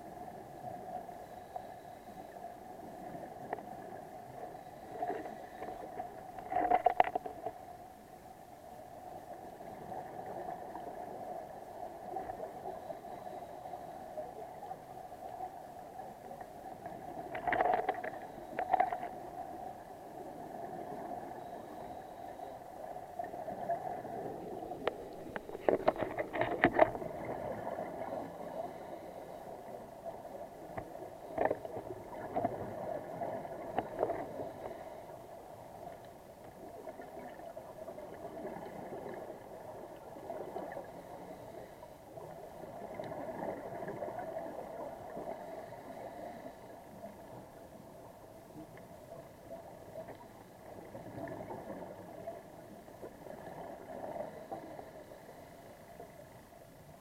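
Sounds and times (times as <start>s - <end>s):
boat engine hum underwater: 0.0s - 57.0s.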